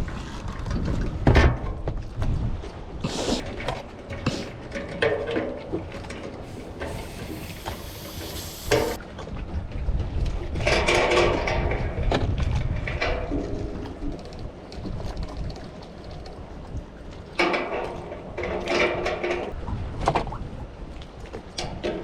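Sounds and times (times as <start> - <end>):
hiss: 6.5 - 9.0.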